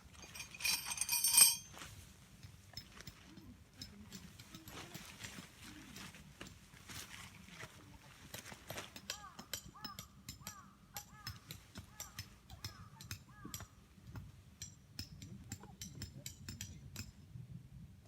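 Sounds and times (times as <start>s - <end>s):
crow cawing: 9.2s - 13.6s.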